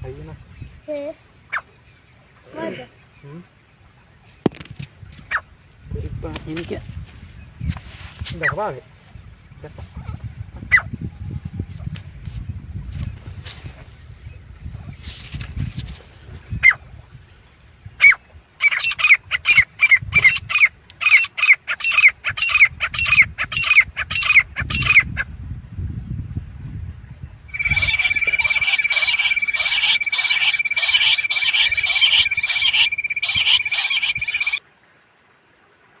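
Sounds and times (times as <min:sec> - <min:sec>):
francolin squawking calls: 0:01.4 - 0:02.0, 0:05.2 - 0:05.5, 0:18.0 - 0:25.3, 0:27.5 - 0:34.6
steady high tone: 0:27.5 - 0:34.6.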